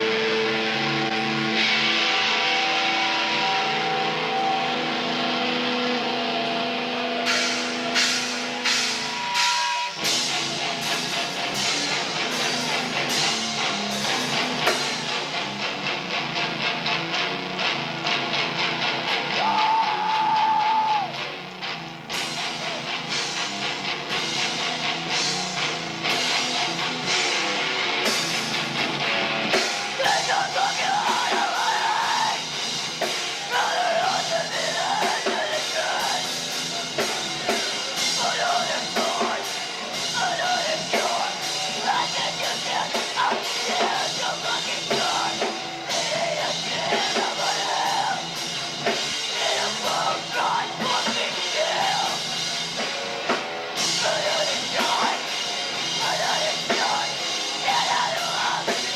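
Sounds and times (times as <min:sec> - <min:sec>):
rock band playing: 0:00.0 - 0:58.9
person singing: 0:19.3 - 0:21.1, 0:30.0 - 0:32.5, 0:33.4 - 0:36.4, 0:37.4 - 0:48.4, 0:49.3 - 0:52.3, 0:53.9 - 0:58.9.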